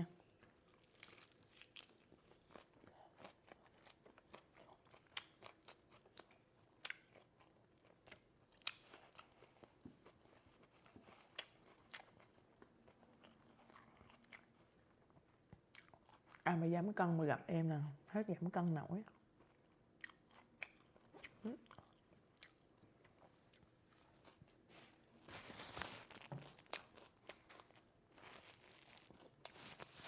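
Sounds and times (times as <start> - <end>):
chewing and crunching: 0.3 - 16.4, 19.0 - 30.0.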